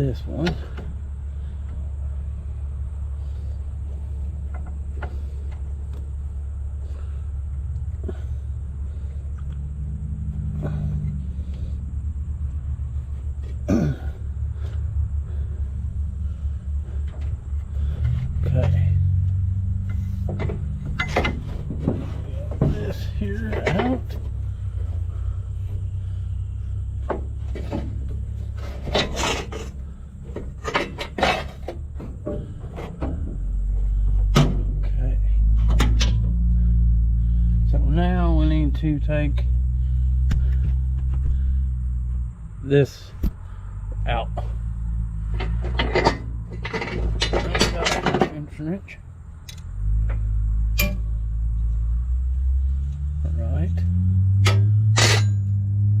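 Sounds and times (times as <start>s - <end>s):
steady low hum: 0.0s - 56.0s
steady low rumble: 0.0s - 56.0s.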